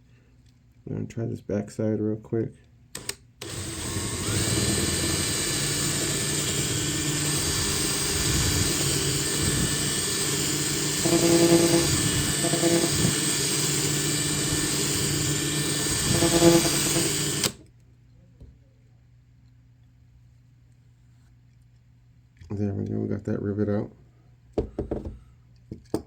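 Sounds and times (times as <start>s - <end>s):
electric drill drilling metal: 3.0s - 17.6s.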